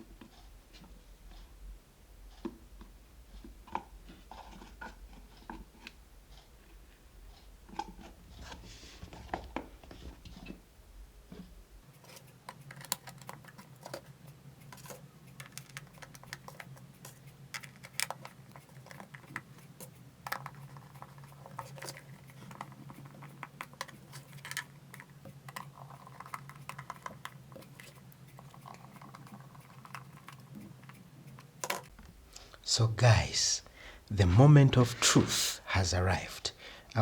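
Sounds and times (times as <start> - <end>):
faint low hum: 31.9 - 37.0.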